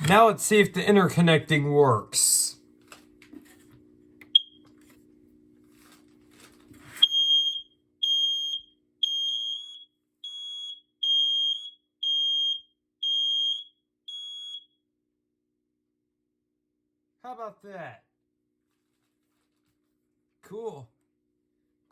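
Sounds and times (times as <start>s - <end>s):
loud high-pitched smoke alarm: 4.4s - 4.6s, 7.0s - 14.8s
quieter second alarm beeping: 7.0s - 14.7s.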